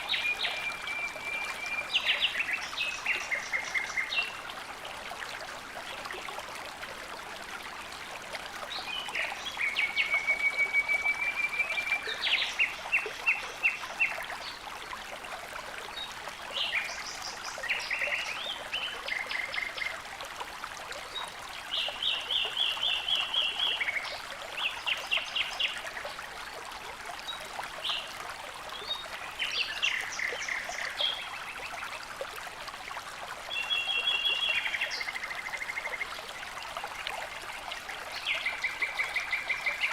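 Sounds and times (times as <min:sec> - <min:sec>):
water trickling: 0:00.0 - 0:39.9.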